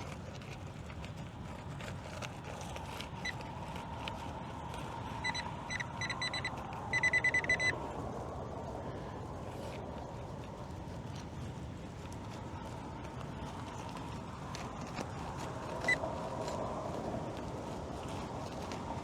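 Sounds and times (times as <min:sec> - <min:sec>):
metal detector beeping: 0:05.2 - 0:07.8.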